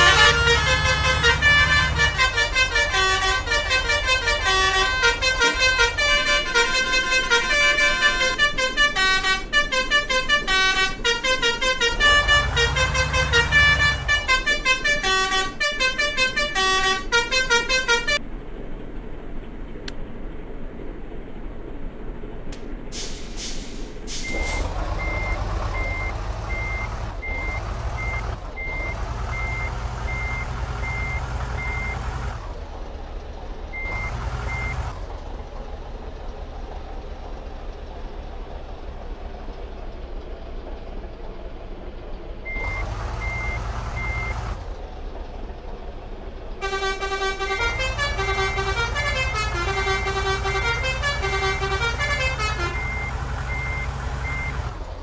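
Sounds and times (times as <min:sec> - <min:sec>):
multi-trumpet horn tune: 0:00.0 - 0:18.2, 0:46.6 - 0:52.9
bus engine running: 0:00.0 - 0:55.0.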